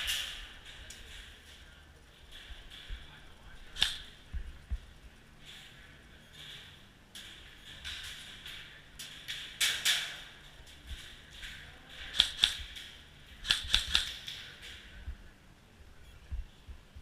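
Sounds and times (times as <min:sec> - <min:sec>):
airsoft gun shots: 0:03.7 - 0:04.1, 0:12.1 - 0:12.8, 0:13.4 - 0:14.3.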